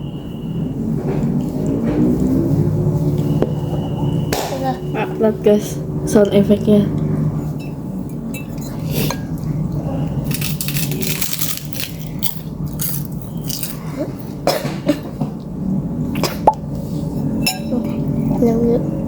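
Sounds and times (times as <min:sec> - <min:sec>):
steady low hum: 0:00.0 - 0:19.0
utensils clinking against a dish: 0:07.5 - 0:09.5, 0:10.1 - 0:13.9, 0:17.2 - 0:18.4.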